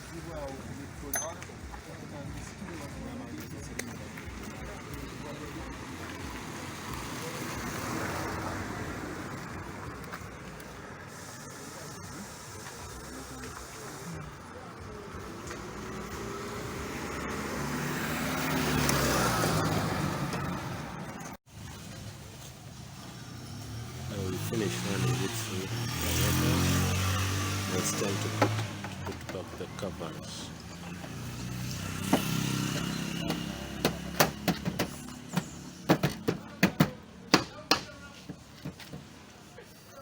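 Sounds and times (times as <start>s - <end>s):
engine hum: 0.0s - 39.6s
vehicle passing by: 4.3s - 21.4s, 22.9s - 36.6s.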